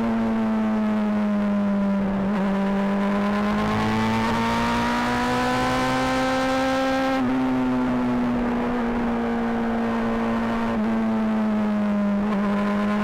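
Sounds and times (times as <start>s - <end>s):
motorcycle engine accelerating: 0.0s - 13.0s.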